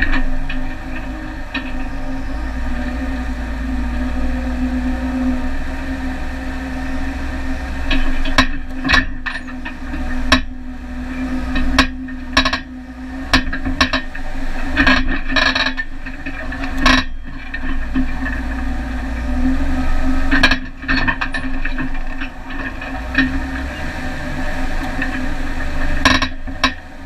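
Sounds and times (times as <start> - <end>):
off-road vehicle engine drone: 0.0 - 27.0
sharp knocks and rattles: 7.8 - 18.9, 20.2 - 27.0.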